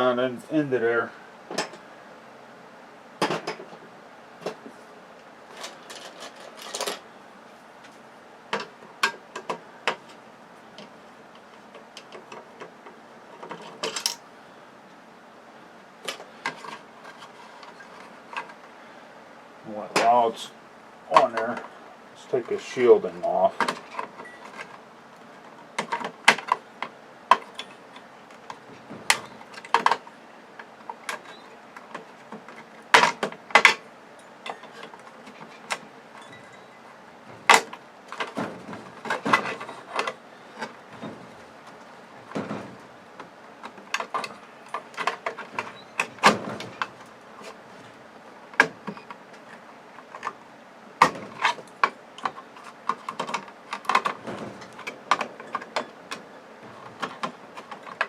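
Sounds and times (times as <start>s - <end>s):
hand tools clicking and clinking: 30.6s - 38.4s.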